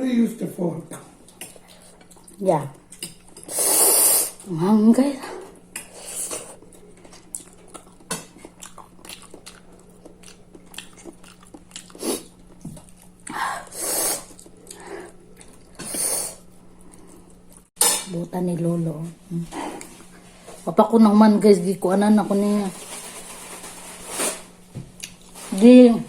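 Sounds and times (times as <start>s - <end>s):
chewing and biting: 6.6s - 13.3s.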